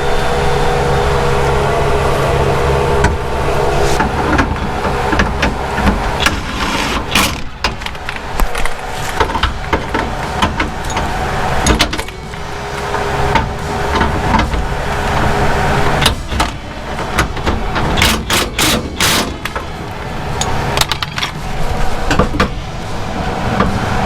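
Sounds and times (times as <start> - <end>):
steady hum: 0.0 - 24.0
metal knocks and clanks: 4.0 - 24.0.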